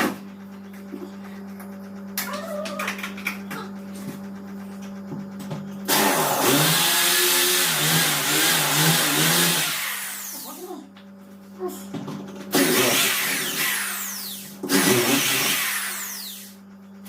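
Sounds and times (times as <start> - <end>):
electric power tool running: 5.8 - 10.7, 12.5 - 16.6.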